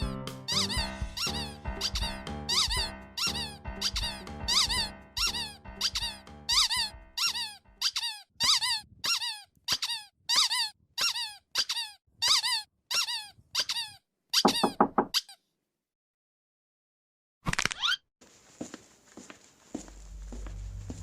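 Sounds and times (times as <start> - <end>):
lower squeaks: 0.5 - 15.3
squeaky cartoon honk: 0.5 - 15.4.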